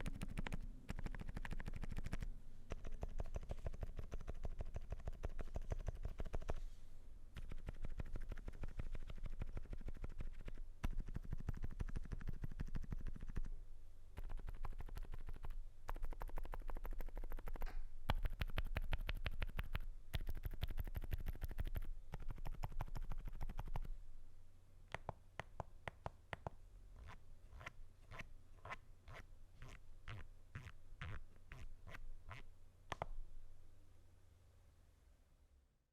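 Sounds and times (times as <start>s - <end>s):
muted keyboard typing: 0.0s - 6.6s, 14.2s - 23.9s.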